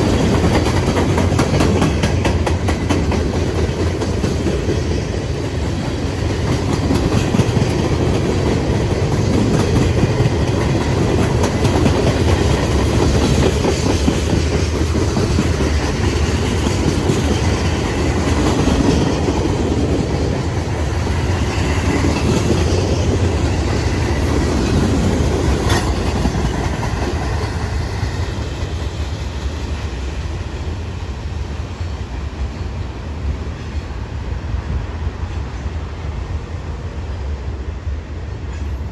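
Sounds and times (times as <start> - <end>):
wheels clicking on rail: 0.0 - 30.8
freight train cars rolling: 0.0 - 38.9.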